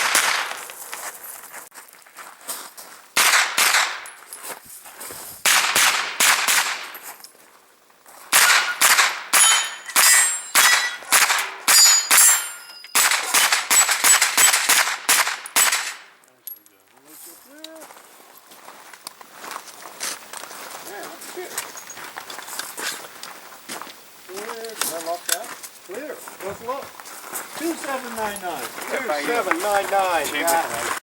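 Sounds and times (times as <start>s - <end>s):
carbine gunshots: 0.0s - 0.7s, 3.2s - 4.1s, 5.4s - 7.0s, 8.3s - 16.2s
bullets clanging on steel targets: 8.3s - 16.7s.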